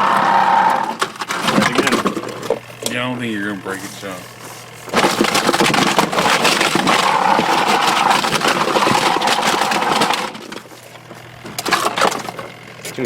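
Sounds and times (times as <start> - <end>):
washing machine motor humming: 0.0 - 13.0
brick clattering in washing machine: 1.0 - 2.6, 4.9 - 10.7, 11.5 - 12.6.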